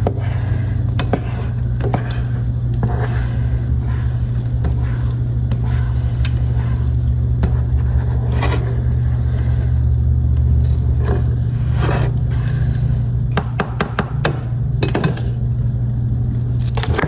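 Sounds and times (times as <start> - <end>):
utensil scraping and tapping in pan: 0.0 - 9.3
steady low hum: 0.0 - 17.0.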